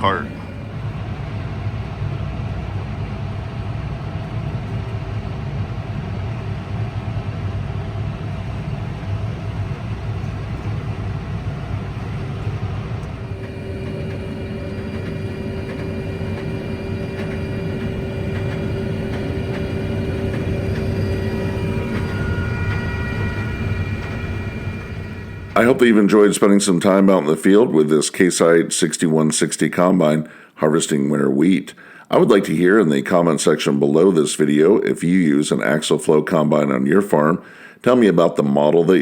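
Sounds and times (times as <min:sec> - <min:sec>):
combine harvester drone: 0:00.0 - 0:27.4
steady machine whine: 0:00.0 - 0:28.0.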